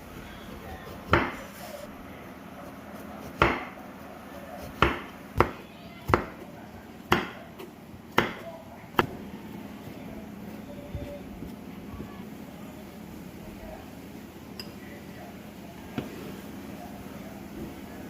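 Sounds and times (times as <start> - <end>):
knife chopping on wooden board: 1.0 - 1.5, 3.2 - 3.8, 4.6 - 6.4, 7.1 - 9.1.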